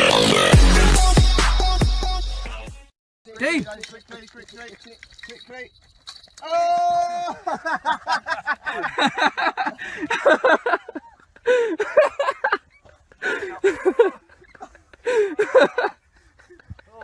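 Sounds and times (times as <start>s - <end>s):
person laughing: 7.0s - 17.0s.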